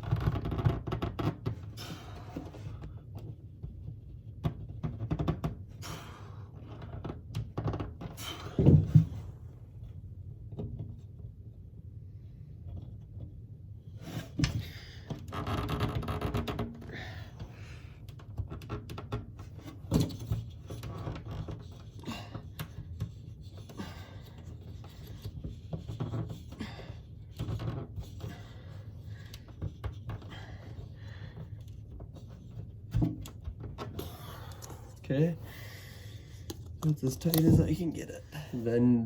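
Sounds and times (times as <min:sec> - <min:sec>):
plastic parts clicking and knocking: 0:36.5 - 0:37.8
plastic parts scraping: 0:36.5 - 0:38.1.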